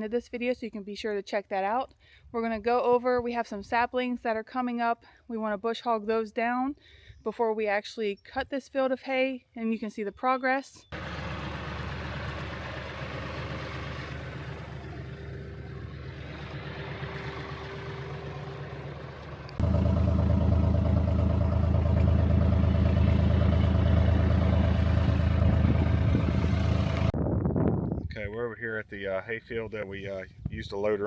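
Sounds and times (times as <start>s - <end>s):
steady whine: 11.0s - 27.2s
vehicle engine running: 11.0s - 27.2s.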